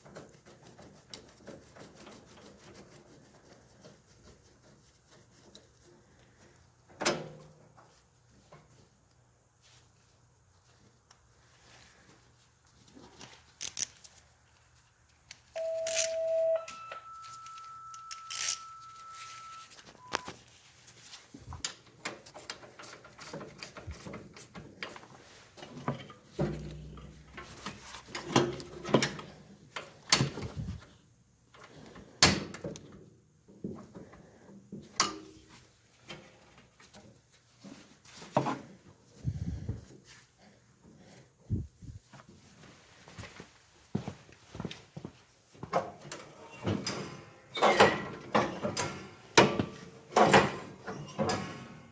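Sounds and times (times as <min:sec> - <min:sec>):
tools knocking and clanking: 0:45.7 - 0:51.9.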